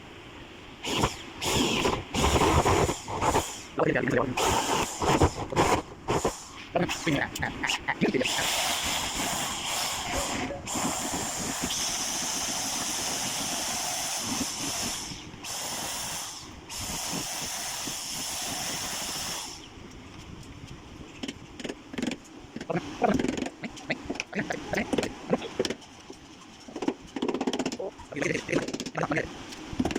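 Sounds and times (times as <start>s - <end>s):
steady hiss: 0.0s - 20.4s.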